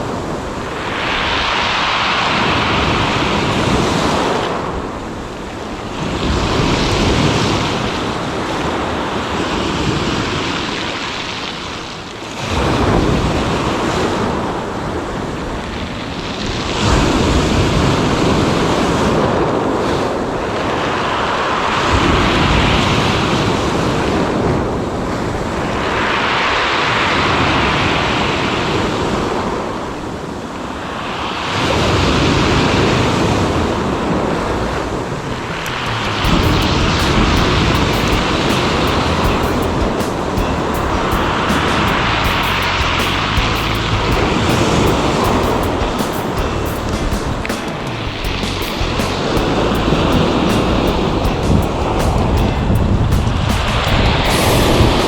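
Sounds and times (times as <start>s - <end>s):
sea waves breaking on shore: 0.0s - 55.0s
wind on the microphone: 12.1s - 55.0s.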